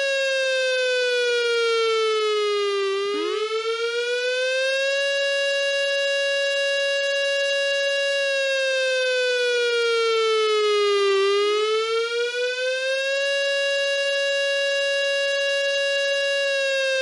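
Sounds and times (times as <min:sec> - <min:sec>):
air-raid siren wailing: 0:00.0 - 0:17.0.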